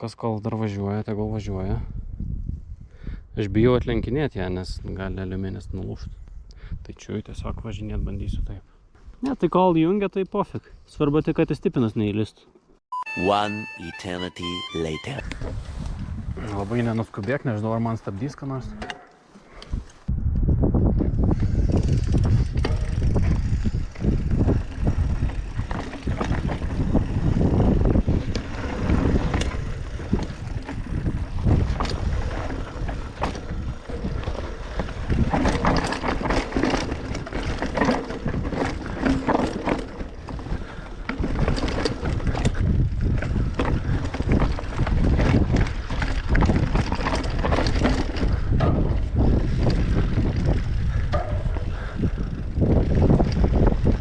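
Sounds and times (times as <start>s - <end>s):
wind buffeting microphone: 1.5s - 8.6s, 15.2s - 16.8s, 19.6s - 54.0s
bicycle clicking and rattling: 21.0s - 54.0s.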